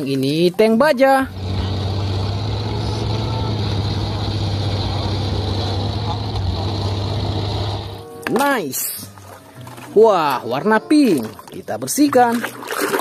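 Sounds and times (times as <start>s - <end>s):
tank engine drone: 1.2s - 8.0s.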